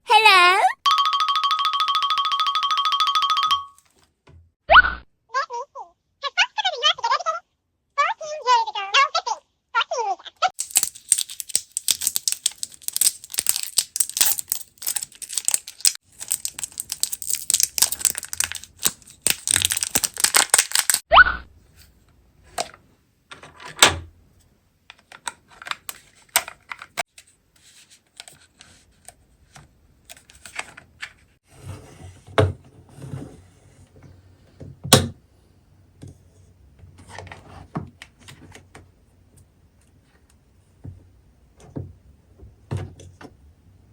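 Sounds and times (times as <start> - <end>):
plastic packaging tearing and crinkling: 10.6 - 21.0.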